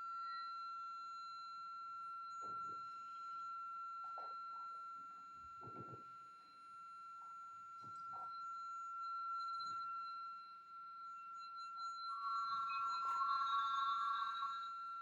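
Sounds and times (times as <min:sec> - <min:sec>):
lower tone: 0:06.8 - 0:15.0
high-pitched pure tone: 0:07.2 - 0:15.0.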